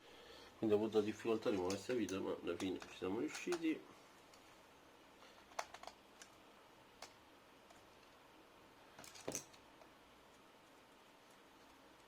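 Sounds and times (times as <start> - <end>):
clicks of small laptop parts: 5.4 - 6.4.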